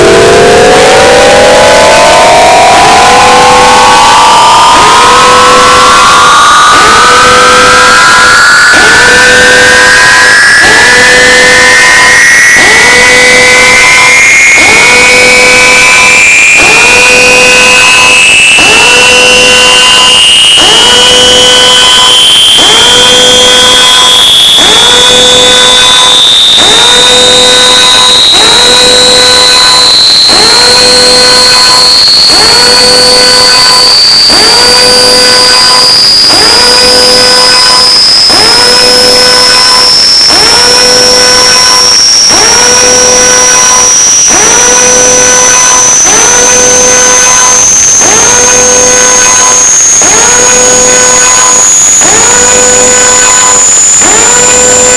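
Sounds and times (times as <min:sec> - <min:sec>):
low pulsing beep: 0:00.0 - 0:28.6
high-pitched electronic siren: 0:00.0 - 0:54.9.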